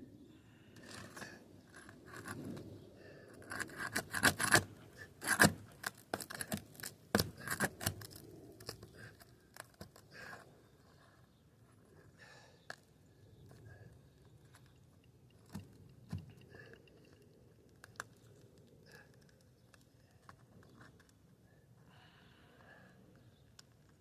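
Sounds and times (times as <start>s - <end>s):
tool scraping under shingles: 3.4s - 10.0s.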